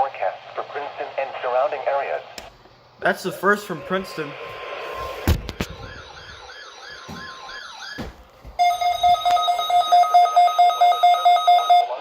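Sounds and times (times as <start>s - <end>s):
warbling siren tone: 4.3s - 8.0s
fast-pulsing alarm beep: 8.6s - 12.0s.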